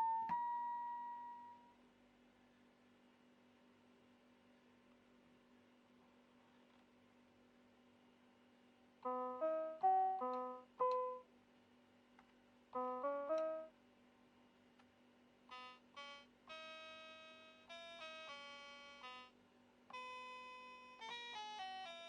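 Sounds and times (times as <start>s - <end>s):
faint steady hum: 0.0s - 22.0s
keyboard sustained notes: 9.0s - 11.2s
mini keyboard playing quick notes: 9.0s - 11.2s, 12.8s - 13.7s, 15.5s - 22.0s.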